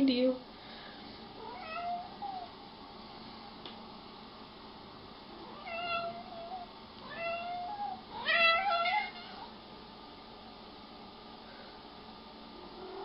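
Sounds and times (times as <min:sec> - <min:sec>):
cat meowing: 0:01.4 - 0:02.5, 0:05.4 - 0:09.5.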